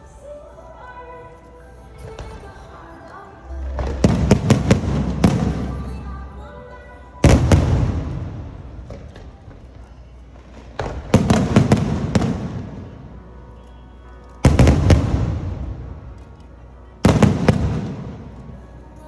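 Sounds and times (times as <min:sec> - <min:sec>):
fireworks bursting: 0:03.6 - 0:06.4, 0:07.2 - 0:13.2, 0:14.4 - 0:16.2, 0:17.0 - 0:18.6.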